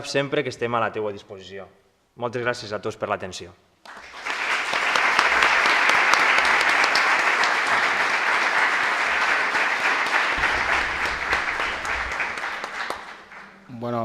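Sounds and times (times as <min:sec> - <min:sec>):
audience applauding: 0:03.9 - 0:14.0.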